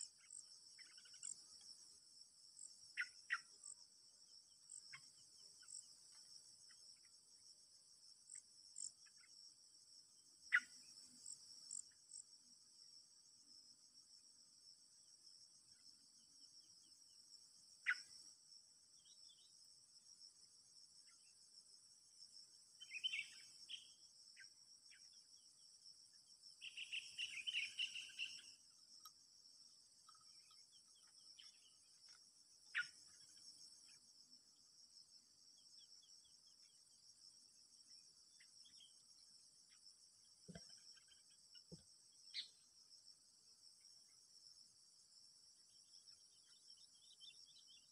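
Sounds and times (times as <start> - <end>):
small birds chirping: 0.0 - 1.9, 2.5 - 7.2, 10.2 - 12.3, 16.2 - 18.3, 22.7 - 25.6, 26.2 - 34.3, 37.8 - 42.7, 45.7 - 47.9
crickets chirping: 0.0 - 47.9.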